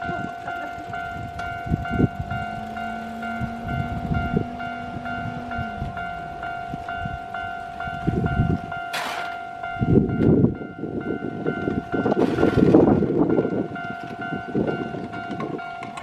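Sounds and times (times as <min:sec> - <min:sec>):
low hum: 0:00.0 - 0:12.0
level-crossing alarm ringing: 0:00.0 - 0:16.0
train rumbling: 0:00.0 - 0:16.0.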